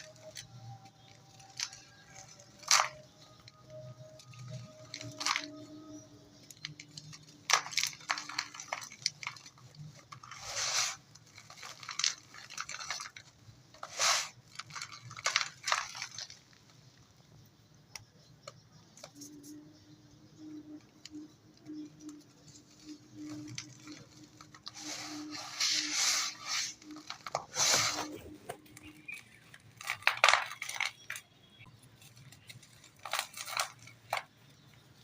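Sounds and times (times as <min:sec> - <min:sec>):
dirt clumps crumbling: 0:06.6 - 0:17.2, 0:22.6 - 0:35.0.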